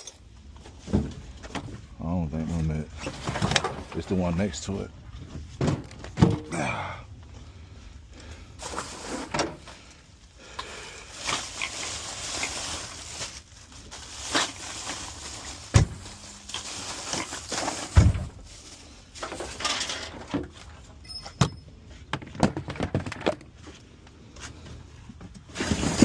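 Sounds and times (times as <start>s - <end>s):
tools rustling and clinking: 0.0s - 1.8s, 14.1s - 23.7s.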